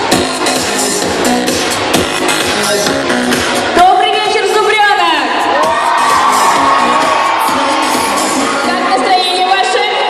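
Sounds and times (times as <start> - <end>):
music: 0.0 - 10.0
children cheering and shouting: 5.3 - 10.0.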